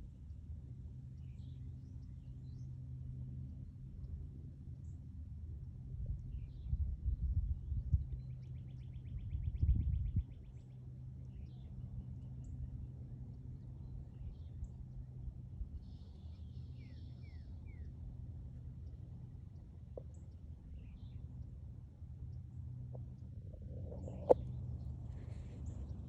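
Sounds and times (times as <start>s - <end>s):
low rumble on microphone: 0.0s - 26.0s.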